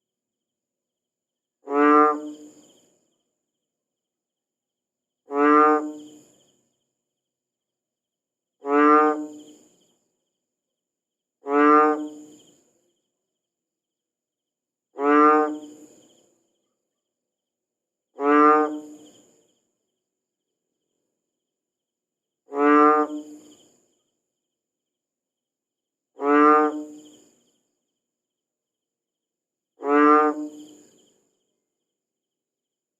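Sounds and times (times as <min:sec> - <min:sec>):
frog croaking: 0:01.6 - 0:03.1, 0:05.2 - 0:06.6, 0:08.6 - 0:10.0, 0:11.4 - 0:12.8, 0:14.9 - 0:17.0, 0:18.1 - 0:19.6, 0:22.4 - 0:24.1, 0:26.1 - 0:27.6, 0:29.7 - 0:31.3.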